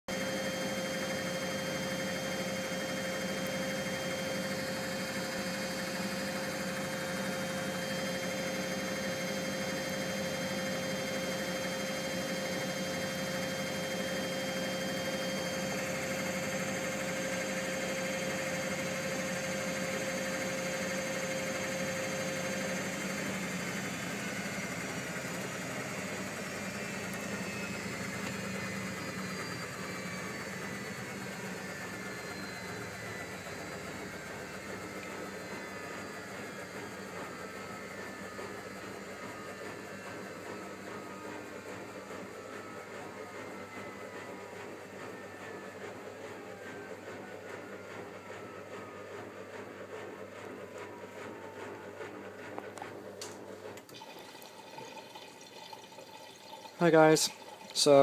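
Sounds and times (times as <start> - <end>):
washing machine spinning: 0.1 - 58.0.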